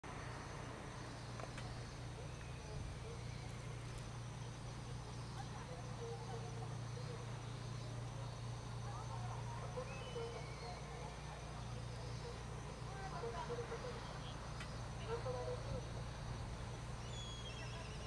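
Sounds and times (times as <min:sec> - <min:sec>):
boat engine droning: 0:00.0 - 0:18.0
faint distant voices: 0:00.1 - 0:18.0
short calls: 0:09.3 - 0:18.0.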